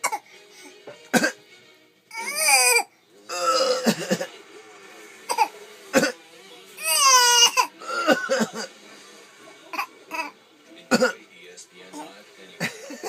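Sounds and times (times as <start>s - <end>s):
baby fake coughing: 0.0s - 0.3s, 1.1s - 1.4s, 5.3s - 6.2s, 6.9s - 8.7s, 10.9s - 11.2s
baby whiny vocalizations: 2.1s - 3.6s, 6.8s - 8.1s.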